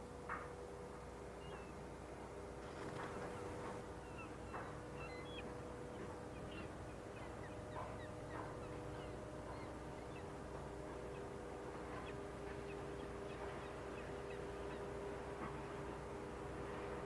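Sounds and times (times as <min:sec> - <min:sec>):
steady low hum: 0:00.0 - 0:17.0
birds chirping and squawking: 0:04.0 - 0:05.6, 0:06.3 - 0:10.3.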